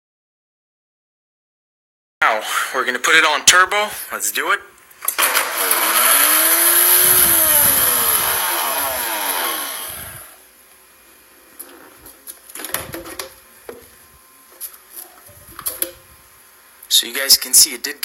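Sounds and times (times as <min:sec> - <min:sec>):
blender motor grinding and rattling: 0:05.1 - 0:10.4.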